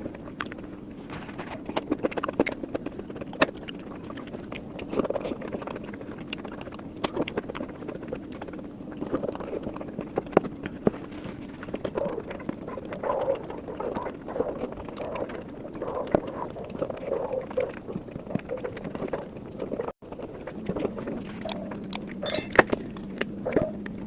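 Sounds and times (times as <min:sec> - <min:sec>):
close chewing and mouth sounds: 0:00.0 - 0:24.0.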